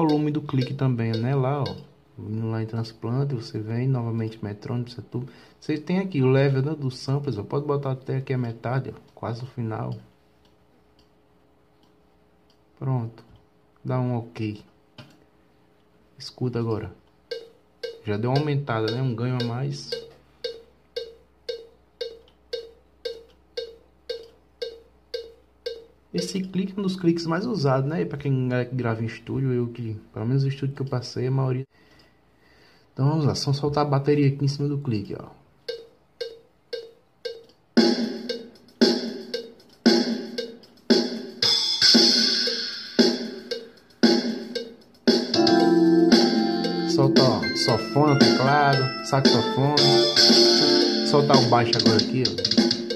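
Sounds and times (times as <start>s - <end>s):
drum track playing: 0.0s - 1.9s, 17.3s - 27.0s, 35.7s - 52.9s
metronome ticks: 0.0s - 1.9s, 9.8s - 11.2s, 17.0s - 27.6s, 30.5s - 31.1s, 35.6s - 52.9s.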